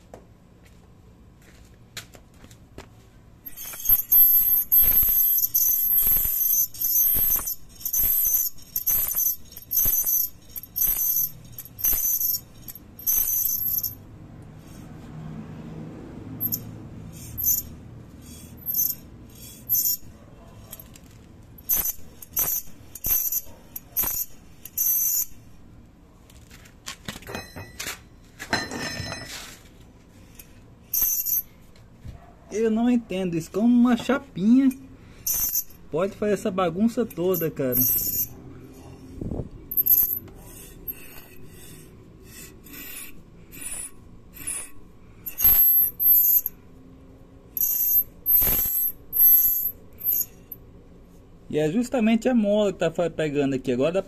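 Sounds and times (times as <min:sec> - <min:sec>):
high-pitched metallic brake squeal: 0:03.5 - 0:14.0, 0:16.4 - 0:20.9, 0:21.6 - 0:25.6, 0:30.3 - 0:31.6, 0:35.2 - 0:35.9, 0:37.1 - 0:38.4, 0:39.7 - 0:46.6, 0:47.6 - 0:50.6.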